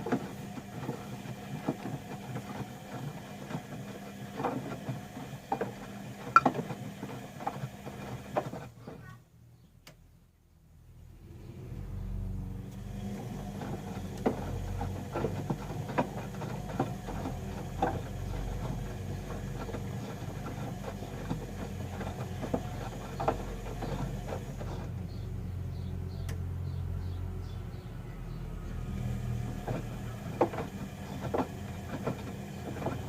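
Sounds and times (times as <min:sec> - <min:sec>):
washing machine drum humming: 0:00.0 - 0:08.7, 0:12.5 - 0:33.0.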